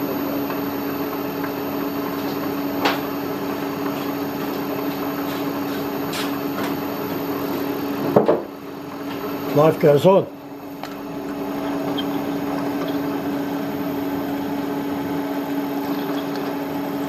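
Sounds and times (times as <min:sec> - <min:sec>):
milling machine humming: 0:00.0 - 0:17.0
faint cutter squeals: 0:11.6 - 0:13.2.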